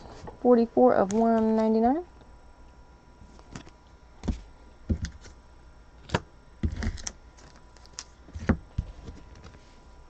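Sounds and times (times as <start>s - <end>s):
cards rustling: 6.7s - 9.6s.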